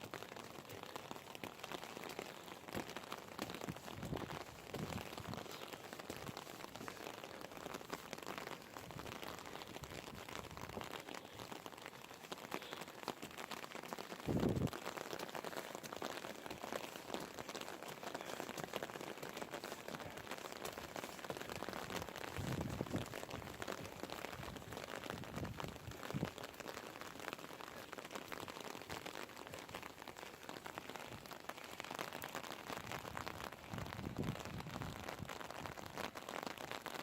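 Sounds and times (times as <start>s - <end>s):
rain falling: 0.0s - 37.0s
raindrops hitting near microphone: 0.0s - 37.0s.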